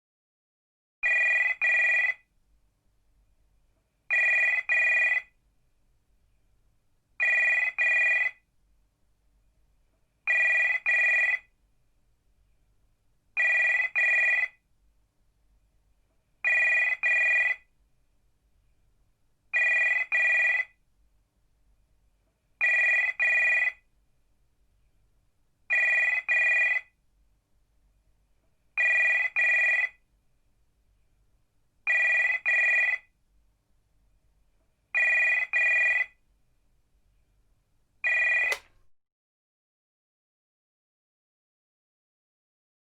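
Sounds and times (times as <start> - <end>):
telephone double ring: 38.0 - 38.9.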